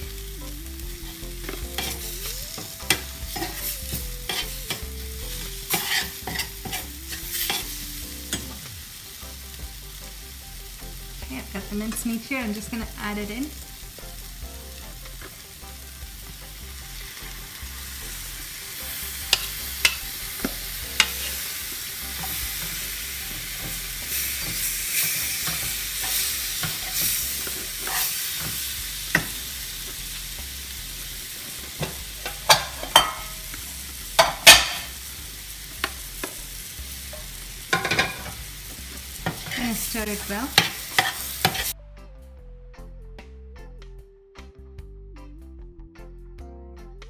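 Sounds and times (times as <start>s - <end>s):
meat sizzling in a frying pan: 0.0s - 41.8s
utensil scraping and knocking pan: 1.1s - 8.6s, 18.9s - 29.5s, 31.5s - 33.6s, 34.2s - 35.0s, 37.1s - 38.4s, 39.0s - 41.7s.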